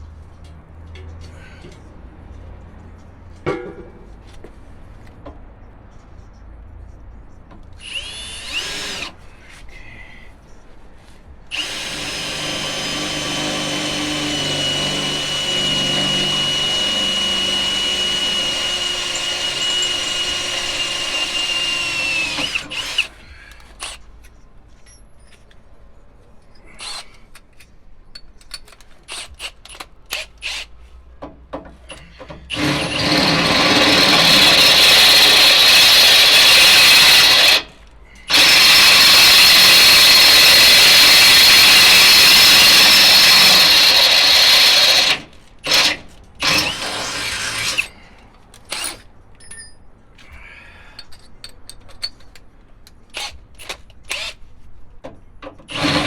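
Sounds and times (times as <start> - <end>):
power drill boring through steel: 7.8 - 9.2, 11.5 - 23.2, 32.5 - 47.9, 54.1 - 54.4, 55.7 - 56.0.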